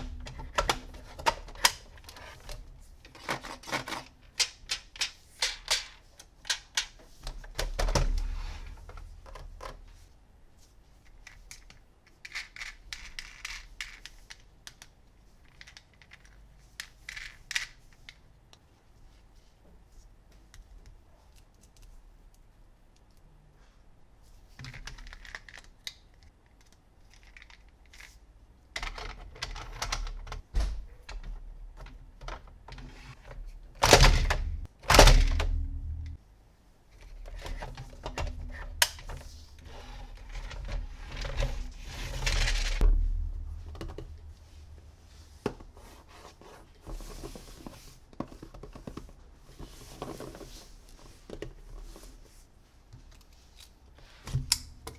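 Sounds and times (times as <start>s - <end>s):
loud knock: 42.8s - 44.9s.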